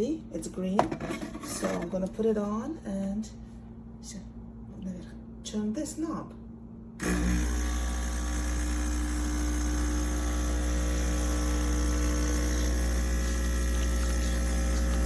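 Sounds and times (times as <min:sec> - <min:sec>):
espresso machine pump humming: 0:07.0 - 0:15.0.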